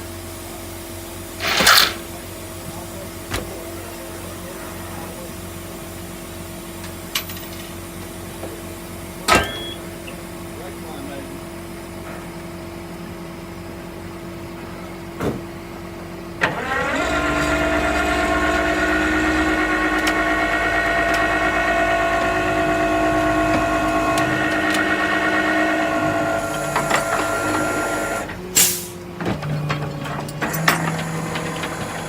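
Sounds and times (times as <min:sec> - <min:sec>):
truck engine idling: 0:00.1 - 0:32.0
hydraulic pump whine: 0:01.3 - 0:04.3, 0:16.3 - 0:32.0
sharp mechanical clunk: 0:01.4 - 0:02.1.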